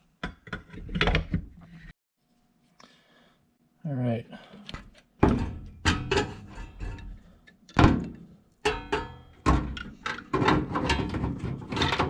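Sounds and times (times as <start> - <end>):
metal parts clanking: 8.7 - 12.0.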